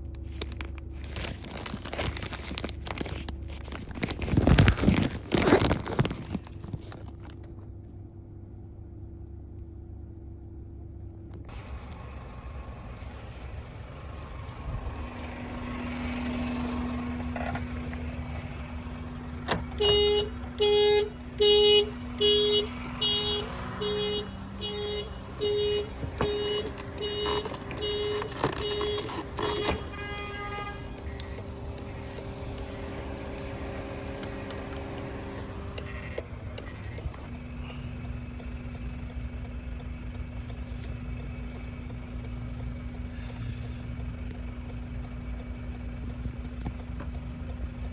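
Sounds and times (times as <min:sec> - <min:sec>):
car alarm horn honking: 0:19.5 - 0:32.0.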